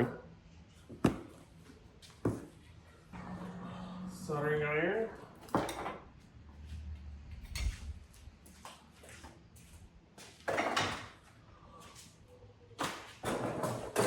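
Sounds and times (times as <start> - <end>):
objects knocking and clattering: 10.4 - 11.2, 12.8 - 14.0.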